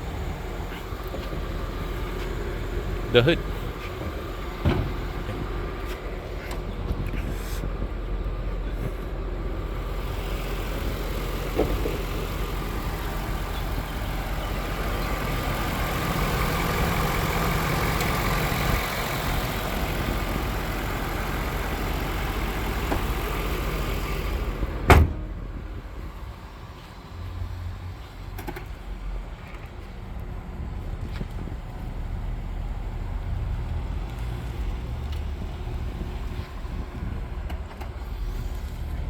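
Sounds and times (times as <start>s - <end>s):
car engine idling: 0.0s - 39.0s
loud thump: 4.6s - 5.4s, 24.8s - 25.3s.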